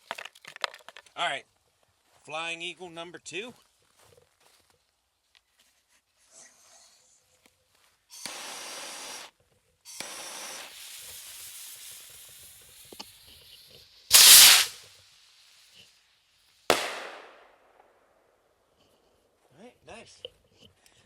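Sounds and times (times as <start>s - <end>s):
firework fuse hissing: 8.1s - 17.9s
sharp pop: 14.1s - 14.8s, 16.7s - 17.5s
firework bang: 14.1s - 15.0s, 16.7s - 17.9s
rocket launching whoosh: 14.1s - 15.0s, 16.7s - 17.5s.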